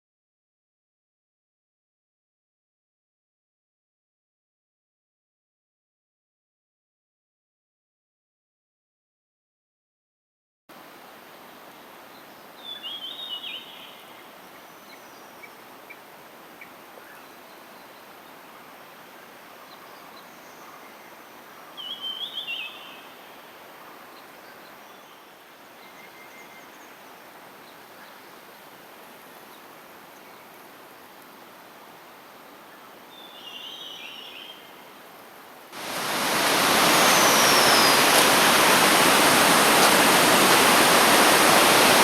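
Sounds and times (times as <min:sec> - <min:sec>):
waterfall rushing: 0:35.8 - 0:42.0
bird singing high phrase: 0:36.8 - 0:38.2.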